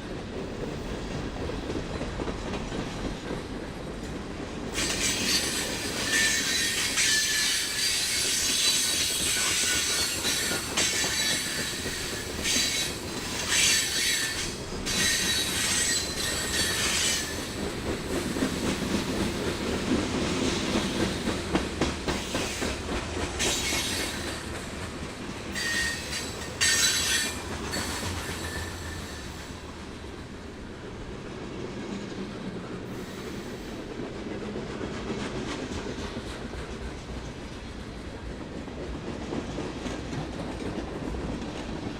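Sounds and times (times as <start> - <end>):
train cars rolling on track: 0.0 - 41.9
train wheels squealing: 4.7 - 19.8, 20.4 - 22.8, 23.4 - 24.7, 25.5 - 29.8, 32.1 - 34.0.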